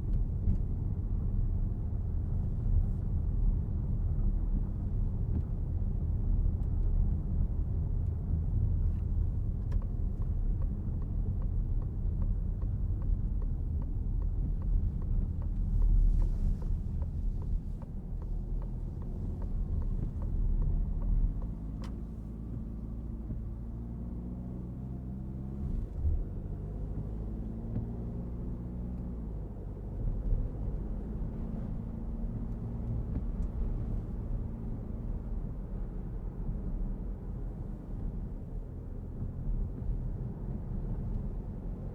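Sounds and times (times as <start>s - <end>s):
road and tyre rumble: 0.0s - 41.9s
car engine running: 4.2s - 41.9s.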